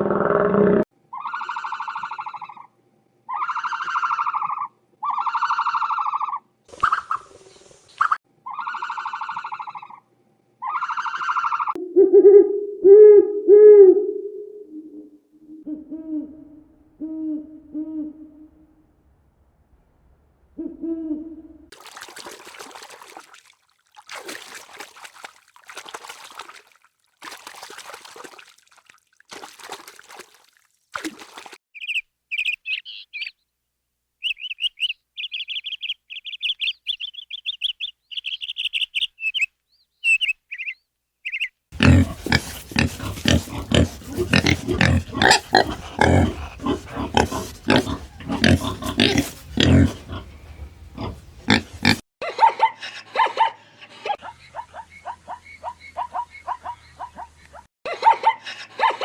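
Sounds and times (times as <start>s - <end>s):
breathy animal bursts: 41.8s - 52.0s
rapid rough animal calls: 41.8s - 52.0s.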